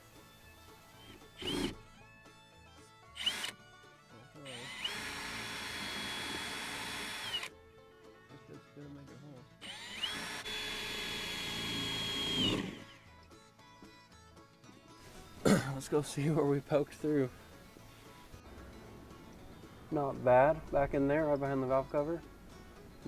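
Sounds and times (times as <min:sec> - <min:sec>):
power drill whining through steel: 0:00.0 - 0:02.1, 0:03.2 - 0:03.6, 0:04.5 - 0:07.5, 0:09.6 - 0:13.2.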